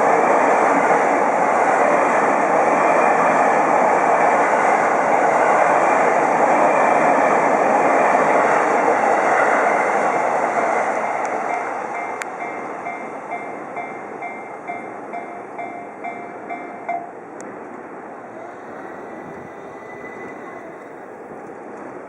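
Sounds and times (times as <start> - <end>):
train running past: 0.0 - 22.0
level crossing warning bell: 11.0 - 17.2.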